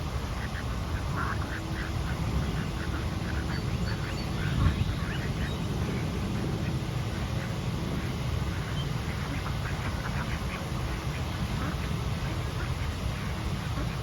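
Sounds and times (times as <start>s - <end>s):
ducks quacking: 0.2s - 14.0s.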